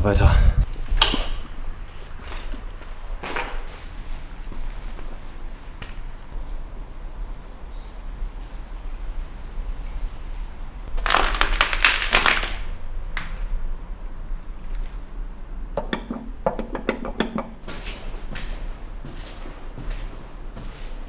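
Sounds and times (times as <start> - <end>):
footsteps crunching over debris: 0.7 - 6.4, 10.9 - 12.8, 17.6 - 21.0.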